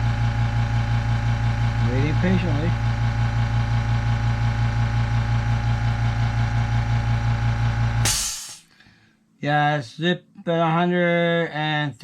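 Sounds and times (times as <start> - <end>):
motor running down: 0.0 - 8.6
air compressor pulsing hum: 0.0 - 8.7
air hissing release: 8.0 - 8.7.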